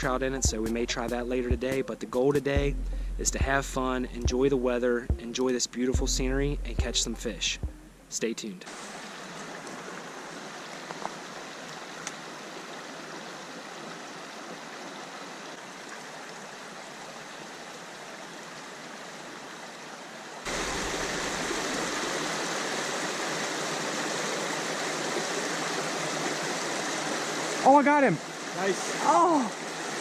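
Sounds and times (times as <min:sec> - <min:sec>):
stream rushing over rocks: 0:08.7 - 0:30.0.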